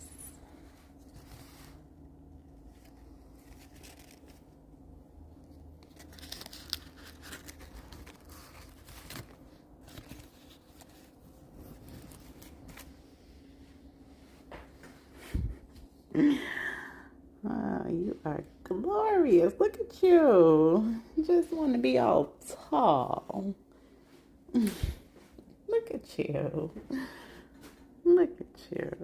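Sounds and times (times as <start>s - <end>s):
faint rustling and crinkling: 0.0s - 16.0s
steady low hum: 0.0s - 29.0s.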